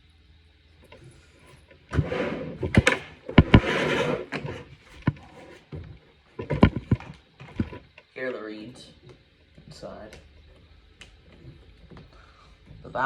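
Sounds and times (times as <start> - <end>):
rubbing noise: 1.9 - 5.9.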